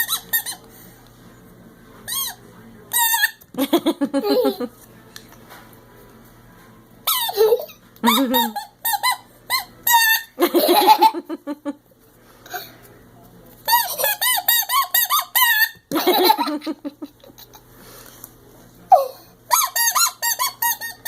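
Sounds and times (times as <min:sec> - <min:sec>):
person laughing: 0:03.6 - 0:04.7.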